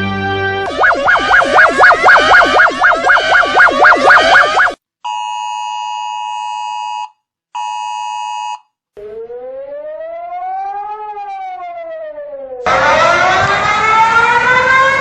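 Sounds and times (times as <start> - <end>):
siren tone rising and falling: 0.6 - 4.8, 9.0 - 15.0
fast-warbling alarm tone: 0.7 - 4.8
long dual-tone beeps: 0.7 - 4.8.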